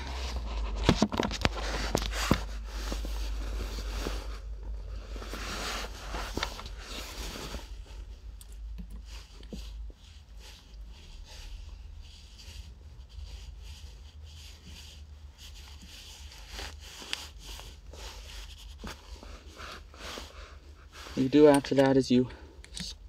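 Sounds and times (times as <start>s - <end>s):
rustling: 0.0s - 23.0s.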